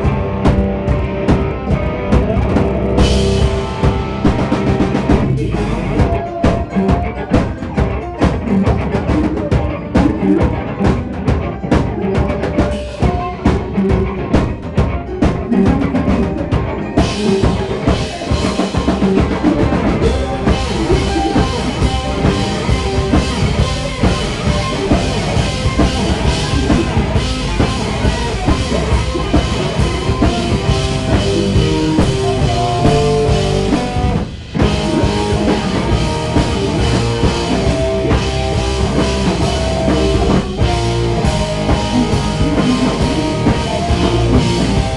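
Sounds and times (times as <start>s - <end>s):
live rock band playing: 0.0s - 44.9s.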